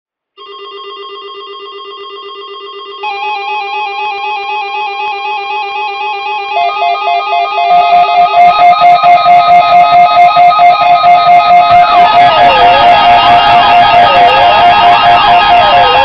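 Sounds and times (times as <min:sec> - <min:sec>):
weather radio alert beeps: 0:11.1 - 0:16.0.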